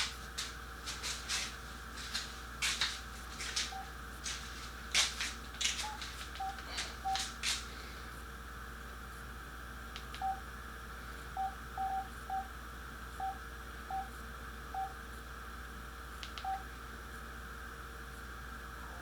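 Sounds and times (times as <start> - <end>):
steady background hum: 0.0 - 19.0
phone keypad beeps: 5.8 - 7.2, 10.2 - 10.4, 11.4 - 12.5, 16.4 - 16.6.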